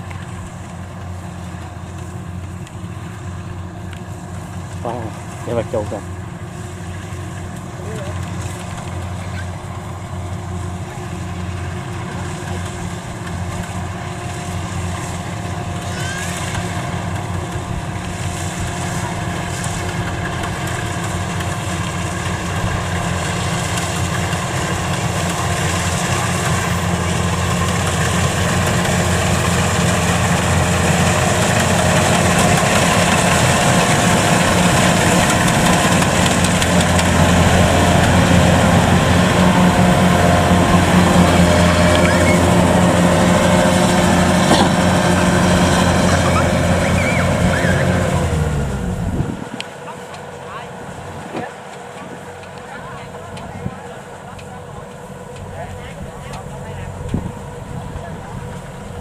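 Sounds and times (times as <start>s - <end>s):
combine harvester engine drone: 0.0s - 59.0s.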